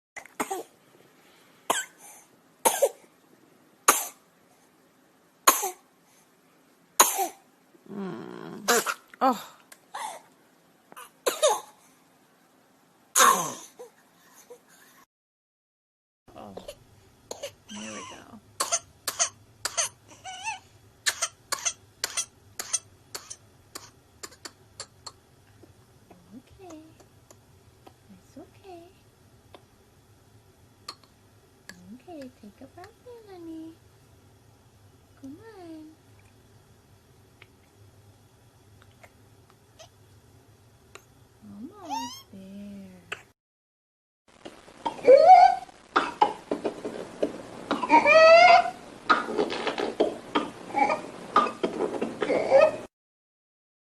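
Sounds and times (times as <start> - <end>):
child coughing harshly: 2.7 - 3.0, 5.5 - 5.8, 7.0 - 7.4, 11.2 - 11.8, 13.2 - 13.8, 17.3 - 20.0.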